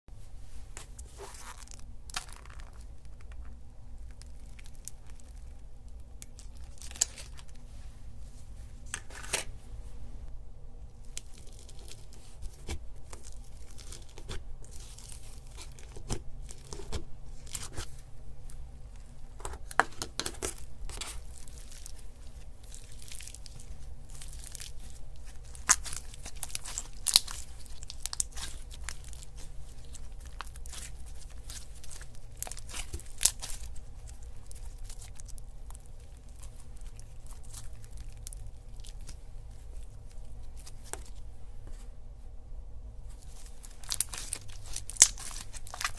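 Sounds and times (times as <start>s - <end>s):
slime squished by hand: 19.4s - 41.3s, 43.2s - 45.9s.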